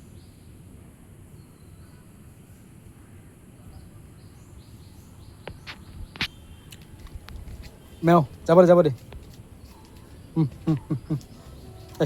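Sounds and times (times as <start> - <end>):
faint high bird chirps: 1.3 - 7.0.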